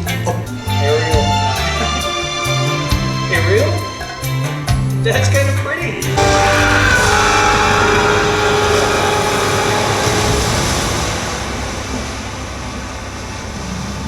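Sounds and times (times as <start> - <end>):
held tone: 6.1 - 12.6.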